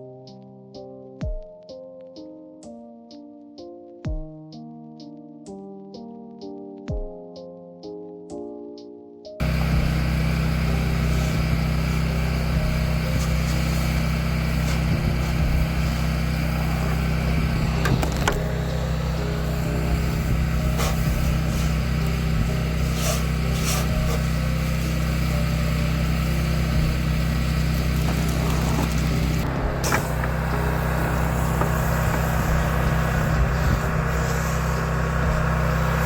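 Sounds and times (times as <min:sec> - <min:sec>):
pressure washer engine running: 0:09.4 - 0:36.0
short hisses: 0:18.8 - 0:25.2.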